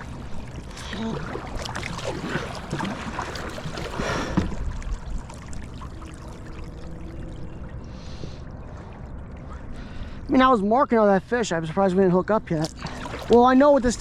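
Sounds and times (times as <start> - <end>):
water splashing against kayak: 0.0 - 9.9, 12.7 - 14.0.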